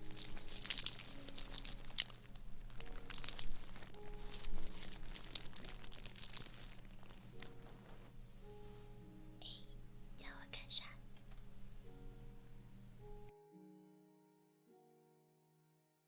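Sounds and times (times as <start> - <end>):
material crinkling and crackling: 0.0 - 8.6
soft background music: 0.0 - 15.7.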